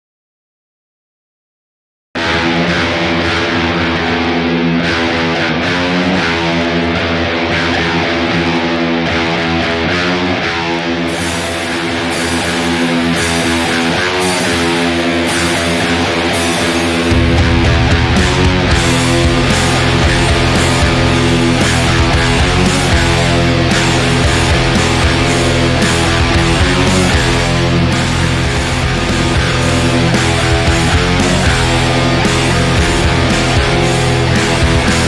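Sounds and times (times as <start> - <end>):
electric guitar through amp: 2.2 - 35.0
recorded rock song: 2.2 - 35.0.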